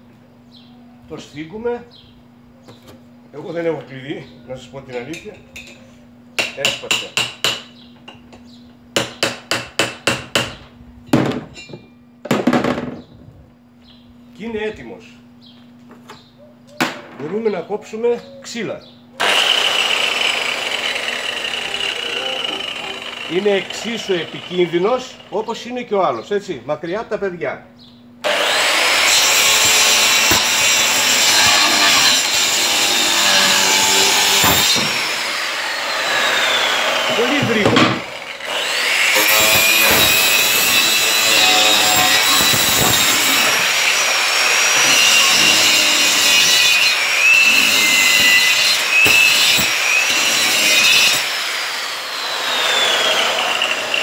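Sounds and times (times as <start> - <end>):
angle grinder cutting wood: 19.2 - 25.6, 28.2 - 54.0.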